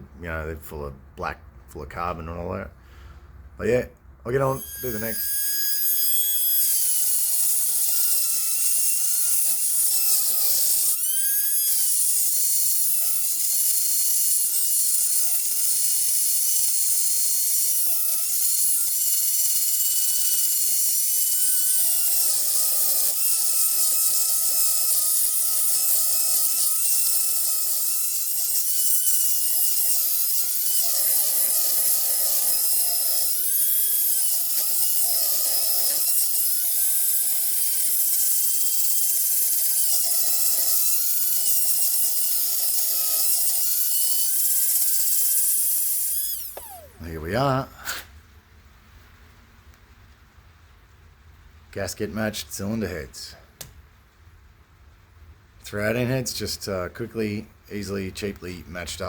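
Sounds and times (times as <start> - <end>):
rotary grinder whining: 4.4 - 47.9.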